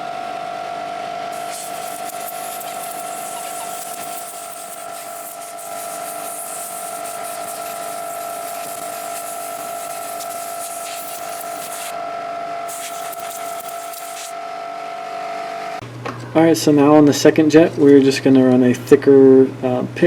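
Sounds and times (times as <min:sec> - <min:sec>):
constant whining hum: 0:00.0 - 0:20.0
spray hissing: 0:01.3 - 0:12.0, 0:12.7 - 0:14.4.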